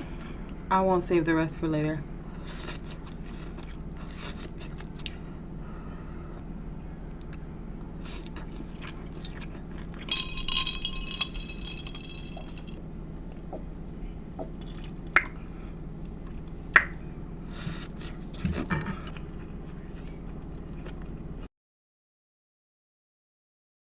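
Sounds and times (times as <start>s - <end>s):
chewing and mouth noises: 2.5s - 5.2s, 8.0s - 15.4s, 16.0s - 21.4s
low hum: 4.9s - 17.6s
tableware clinking: 10.0s - 12.8s.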